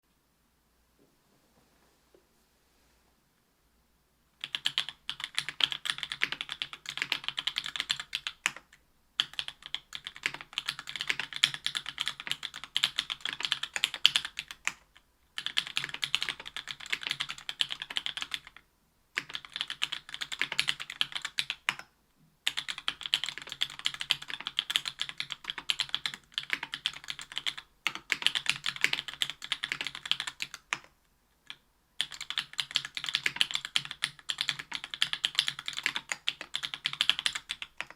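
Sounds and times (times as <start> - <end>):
mechanical keyboard typing: 4.4 - 18.6, 19.2 - 37.9.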